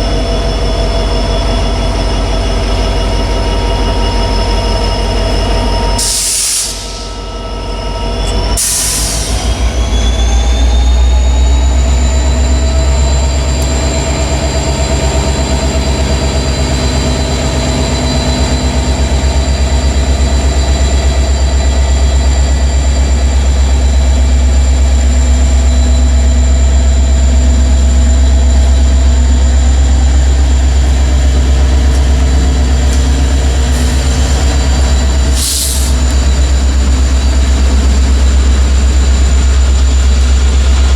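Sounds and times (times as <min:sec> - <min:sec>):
freight train rumbling past: 0:00.0 - 0:40.9
high-pitched wheel squeal: 0:32.5 - 0:40.3.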